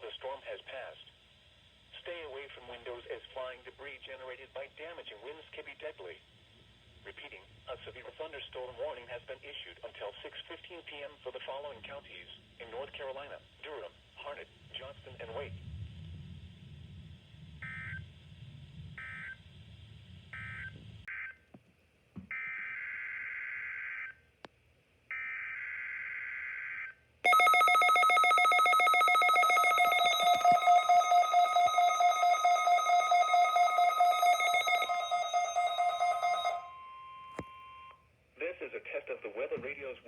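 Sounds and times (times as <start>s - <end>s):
pulsing electronic alert tone: 27.3s - 36.8s.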